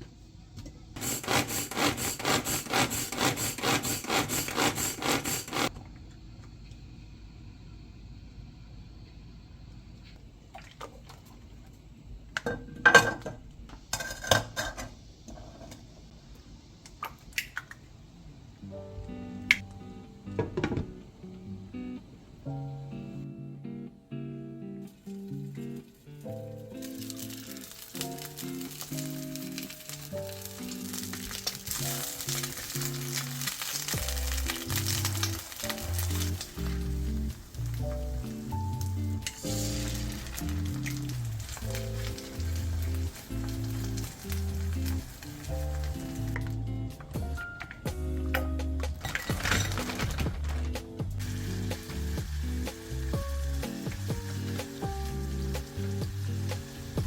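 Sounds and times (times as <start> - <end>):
background music: 18.6 - 57.0
food sizzling in a pan: 25.4 - 46.4, 50.8 - 57.0
dishes and cutlery clattering: 49.0 - 50.6.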